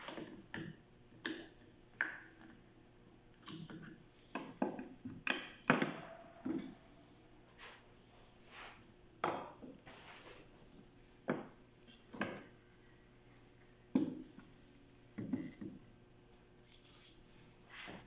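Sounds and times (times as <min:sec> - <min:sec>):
rustling and scraping: 0:07.5 - 0:08.9, 0:09.8 - 0:10.6, 0:16.2 - 0:18.0.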